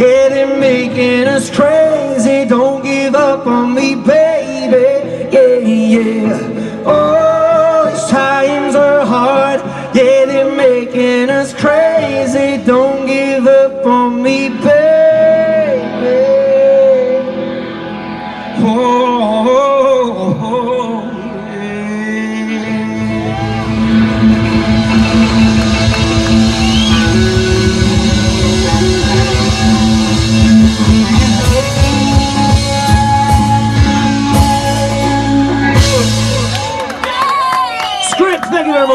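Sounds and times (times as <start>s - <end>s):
person singing: 0.0s - 17.7s, 18.4s - 36.9s
live rock band playing: 0.0s - 20.6s, 22.2s - 38.2s
drums: 23.0s - 38.9s.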